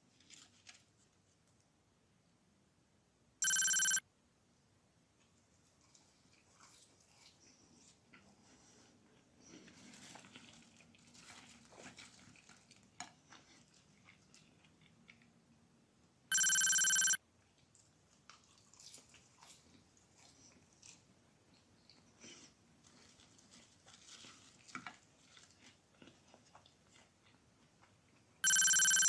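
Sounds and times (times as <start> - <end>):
faint rustles and clicks: 0.0 - 1.6
electronic ringing tone: 3.4 - 4.0, 16.3 - 17.2, 28.4 - 29.0.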